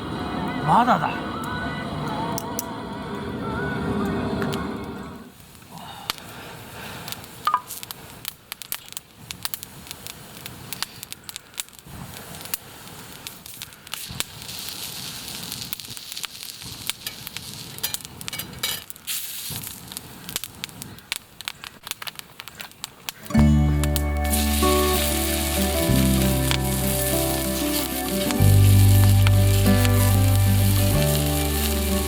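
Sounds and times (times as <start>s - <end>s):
campfire crackling: 4.9s - 32.0s
burning wood snapping: 6.9s - 32.0s.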